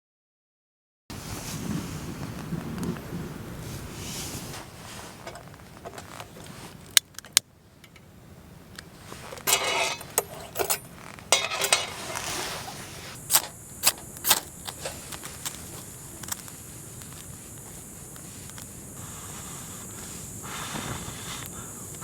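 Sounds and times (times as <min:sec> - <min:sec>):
rustling scrapes: 0:03.6 - 0:06.9, 0:09.0 - 0:21.3.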